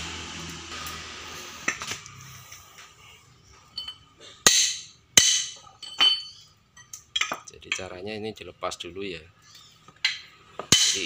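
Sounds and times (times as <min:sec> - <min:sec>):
metal car parts clinking: 0:03.5 - 0:08.0, 0:10.0 - 0:11.0
sharp metallic knocks: 0:03.8 - 0:06.4, 0:10.0 - 0:11.0.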